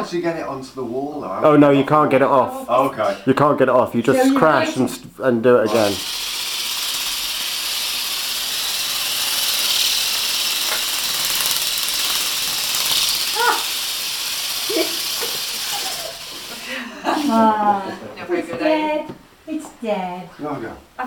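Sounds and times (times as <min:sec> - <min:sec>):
toy bird motor and flapping wings: 0:05.7 - 0:17.3.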